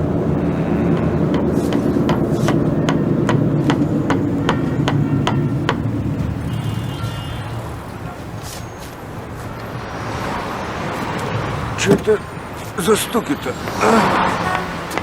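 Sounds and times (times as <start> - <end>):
moving vehicle drone: 0.0 - 15.0
sharp evenly spaced knocks: 0.8 - 6.6.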